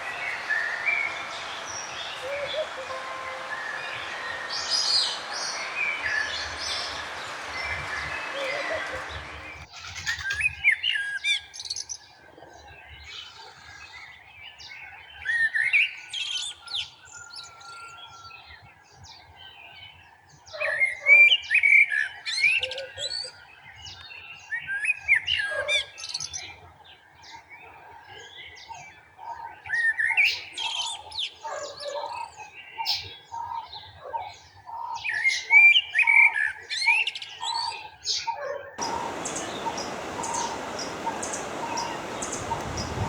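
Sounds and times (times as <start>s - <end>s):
distant bird calls: 0.0s - 12.1s, 38.8s - 43.0s
songbirds chirping and warbling: 0.0s - 43.0s.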